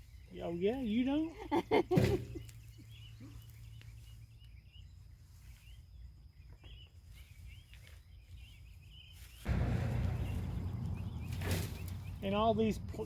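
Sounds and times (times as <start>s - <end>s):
small birds chirping: 0.0s - 13.0s
low outdoor rumble: 9.4s - 13.0s
sudden loud noise: 9.5s - 13.0s.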